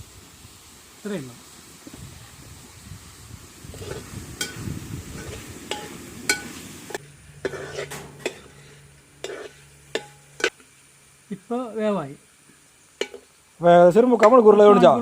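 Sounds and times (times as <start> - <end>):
meat sizzling in a pan: 0.0 - 15.0
spoon scraping and clinking pan: 3.7 - 10.6, 13.0 - 13.3.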